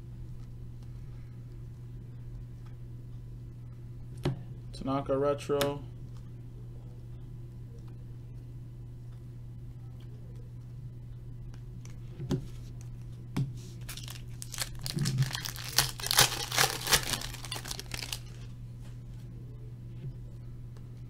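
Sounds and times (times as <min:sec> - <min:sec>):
wrapper crinkling and tearing: 0:13.8 - 0:18.5.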